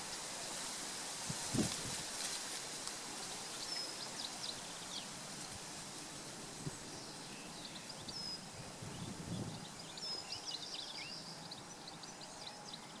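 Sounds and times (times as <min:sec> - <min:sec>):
background hiss: 0:00.0 - 0:13.0
birds chirping and trilling: 0:06.6 - 0:13.0.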